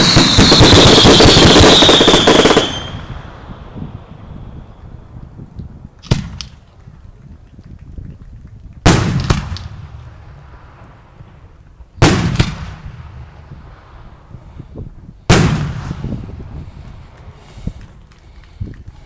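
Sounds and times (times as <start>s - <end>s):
firework shells bursting: 0.0s - 3.9s.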